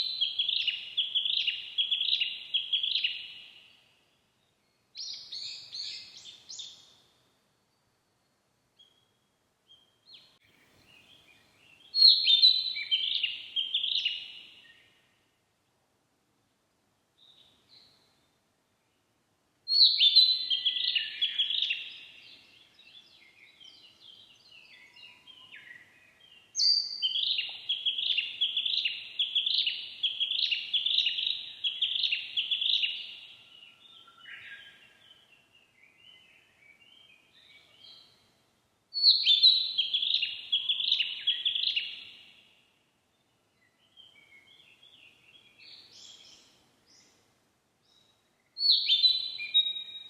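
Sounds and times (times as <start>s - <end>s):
bird singing high phrases: 0.0s - 3.8s, 8.8s - 15.1s, 19.7s - 38.2s, 39.0s - 42.6s, 48.0s - 50.0s.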